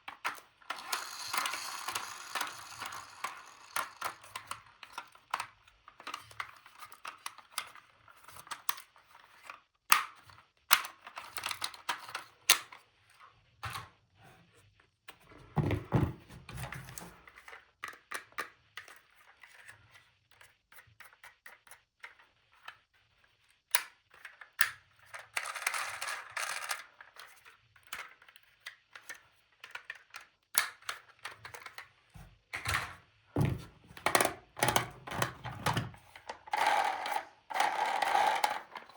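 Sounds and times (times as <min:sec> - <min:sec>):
plastic toy pieces clicking: 0:00.2 - 0:07.8, 0:23.8 - 0:28.3, 0:36.4 - 0:38.9.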